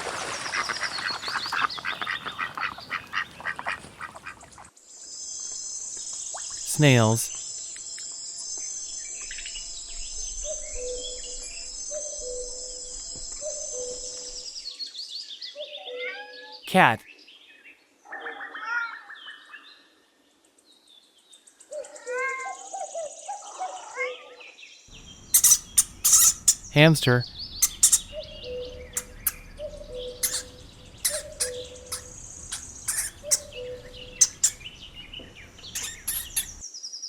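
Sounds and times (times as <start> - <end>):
hamster clicks and squeaks: 25.2 - 26.9, 27.6 - 36.6.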